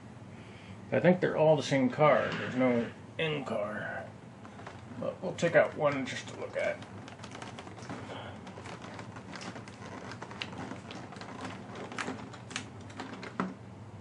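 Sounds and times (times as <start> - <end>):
packaging rustling: 4.4 - 13.6.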